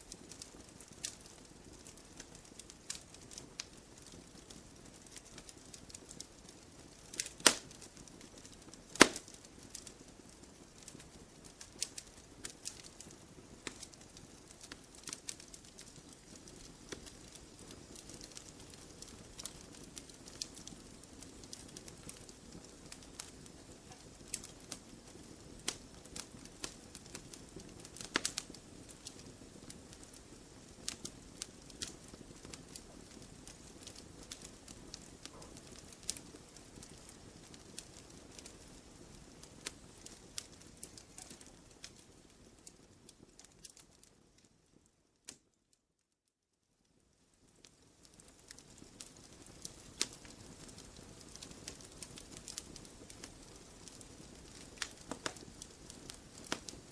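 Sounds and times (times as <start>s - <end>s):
campfire crackling and popping: 0.0s - 45.5s, 46.9s - 56.9s
soft low hiss: 0.0s - 56.9s.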